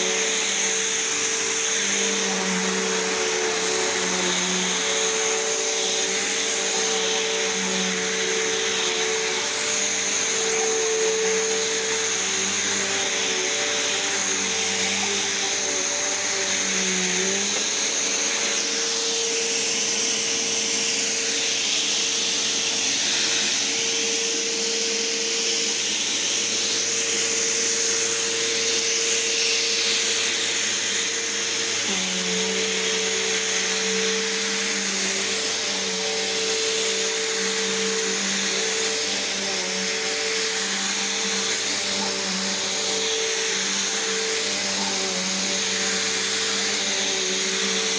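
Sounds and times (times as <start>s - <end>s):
vacuum cleaner running: 0.0s - 47.9s.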